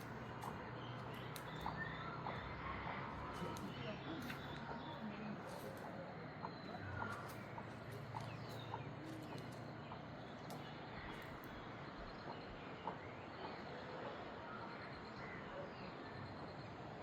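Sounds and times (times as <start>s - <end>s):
birds chirping and clucking: 0.0s - 11.4s.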